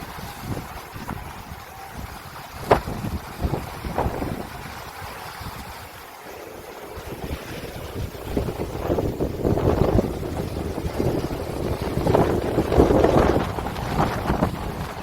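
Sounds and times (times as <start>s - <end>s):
wind blowing over sea: 0.0s - 15.0s
wind buffeting microphone: 0.0s - 15.0s.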